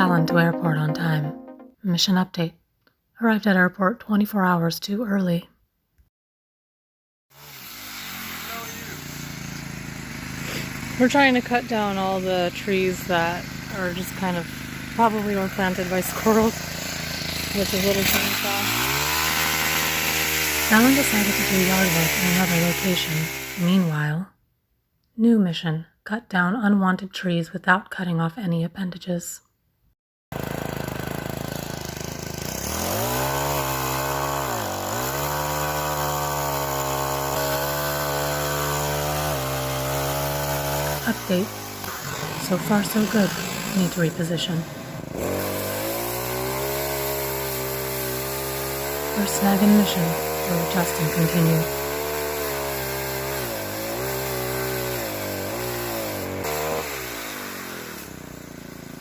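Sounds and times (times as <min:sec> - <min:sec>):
small chainsaw running: 0:07.3 - 0:23.9, 0:30.3 - 0:59.0.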